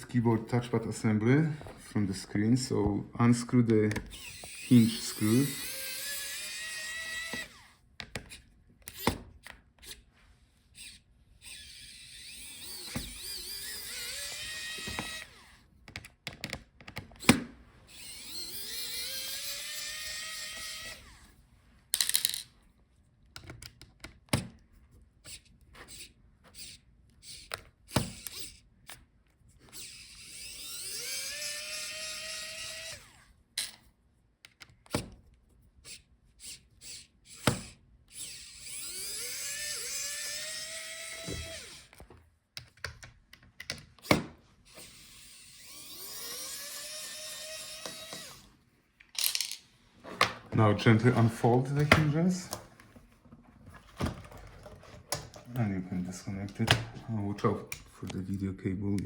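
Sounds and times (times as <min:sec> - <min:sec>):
electric screwdriver whine: 0:04.1 - 0:07.8, 0:10.8 - 0:15.6, 0:17.2 - 0:21.3, 0:29.7 - 0:33.8, 0:35.9 - 0:42.0, 0:44.7 - 0:48.5
clicks and taps of tool and screws: 0:07.3 - 0:10.0, 0:15.8 - 0:17.4, 0:23.2 - 0:24.6, 0:34.4 - 0:35.3, 0:41.3 - 0:44.3, 0:49.0 - 0:49.6.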